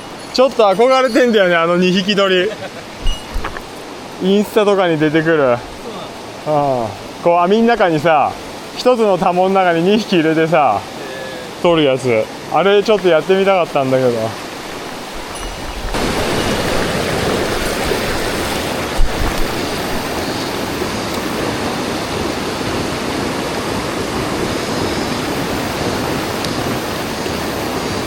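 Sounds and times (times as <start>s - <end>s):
stream rushing over rocks: 0.0s - 28.0s.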